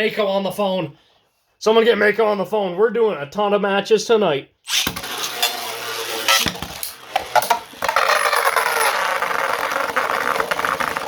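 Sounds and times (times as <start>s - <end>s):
spinning top whirring scrape: 4.7s - 11.0s
spinning tops clacking: 4.8s - 11.0s.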